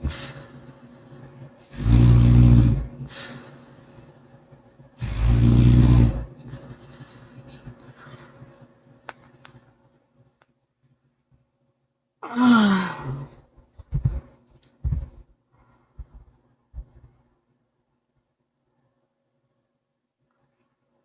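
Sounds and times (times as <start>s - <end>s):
person sighing in sleep: 12.2s - 13.4s.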